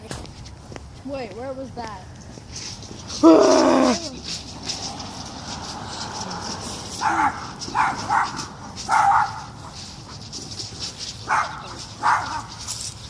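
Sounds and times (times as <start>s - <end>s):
dog barking: 7.0s - 9.8s, 11.2s - 12.6s.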